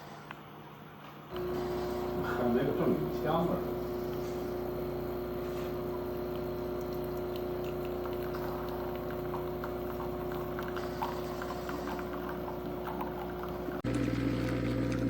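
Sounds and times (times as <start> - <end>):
espresso machine pump humming: 1.3 - 15.0
coffee trickling into cup: 1.4 - 15.0.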